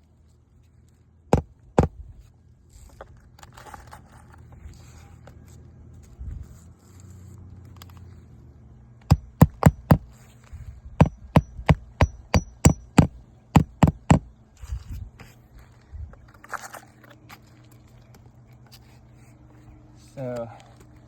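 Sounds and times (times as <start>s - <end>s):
hammer nailing roof shingles: 9.1s - 10.2s, 11.0s - 14.3s.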